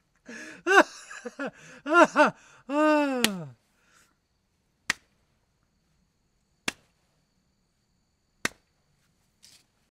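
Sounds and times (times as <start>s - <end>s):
hand slapping knee: 3.1s - 3.5s, 4.8s - 5.2s, 6.6s - 7.0s, 8.4s - 8.7s.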